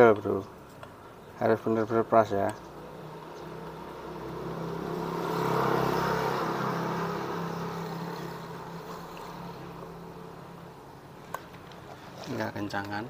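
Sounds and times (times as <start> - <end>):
vehicle passing by: 2.7 - 11.0.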